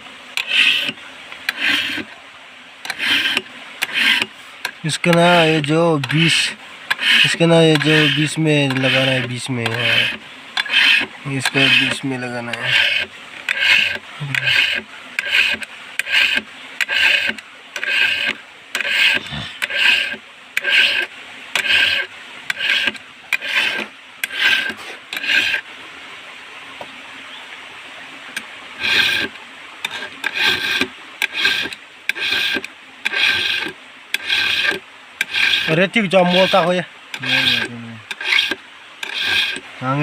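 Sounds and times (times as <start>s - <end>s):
file rasping on chainsaw chain: 0.4s - 2.1s, 2.8s - 25.6s, 28.8s - 39.7s.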